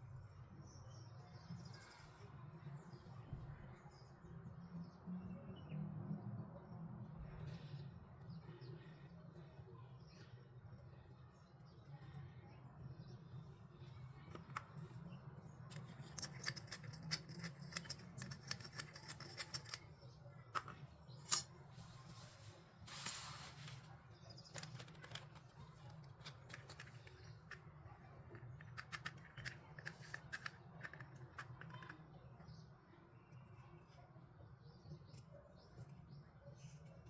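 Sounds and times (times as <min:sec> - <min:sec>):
plastic toy pieces clicking: 0:15.7 - 0:21.5, 0:24.5 - 0:27.6, 0:28.3 - 0:32.1
rustling scrape: 0:21.3 - 0:23.9.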